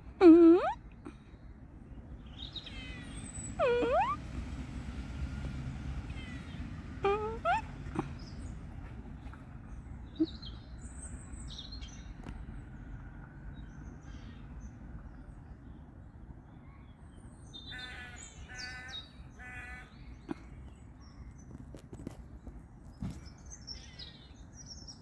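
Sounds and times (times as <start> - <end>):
small bird chirps: 0.2 - 0.8, 2.3 - 4.2, 6.2 - 8.4
harsh bird calls: 2.2 - 4.2, 6.1 - 8.6, 17.6 - 20.6.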